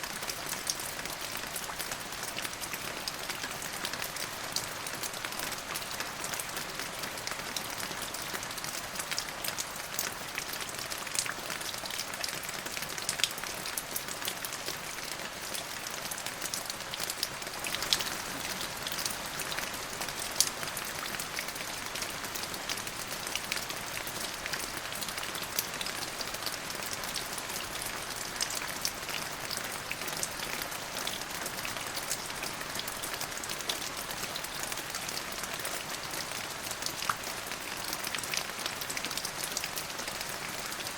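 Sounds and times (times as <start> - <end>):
steady rain hiss: 14.1 - 40.9.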